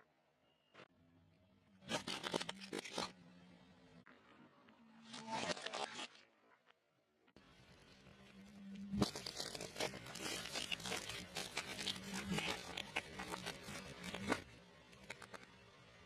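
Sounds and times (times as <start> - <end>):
crunching fried food: 1.8 - 3.1, 7.8 - 15.6.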